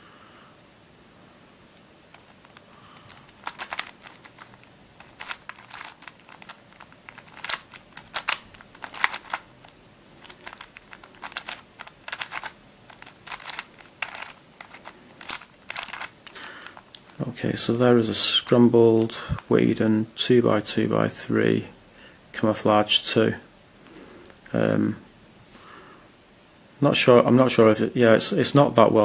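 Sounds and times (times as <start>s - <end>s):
twisty puzzle plastic clicks: 2.1s - 17.2s.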